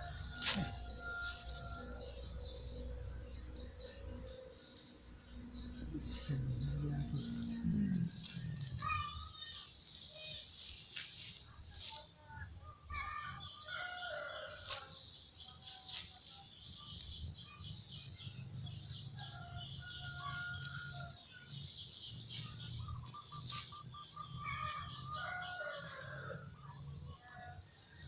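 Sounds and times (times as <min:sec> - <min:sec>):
birds calling: 0:16.6 - 0:25.7.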